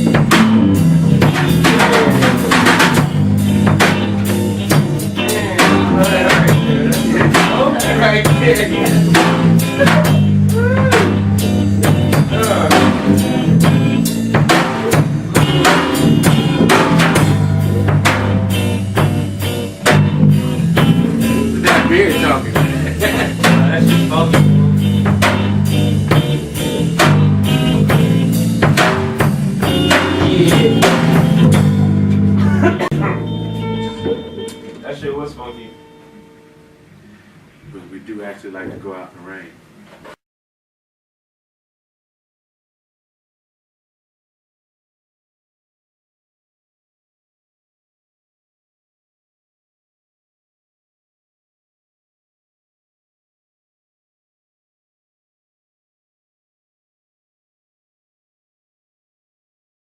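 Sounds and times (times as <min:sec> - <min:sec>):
sustained bass line: 0:00.0 - 0:35.6
drum kit beat: 0:00.0 - 0:35.7
wavering melody: 0:29.5 - 0:36.8.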